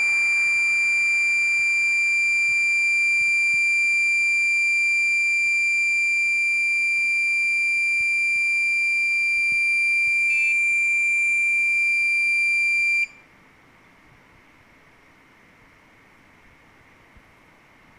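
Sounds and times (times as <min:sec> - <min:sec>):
high-pitched electronic alarm tone: 0:00.0 - 0:13.2.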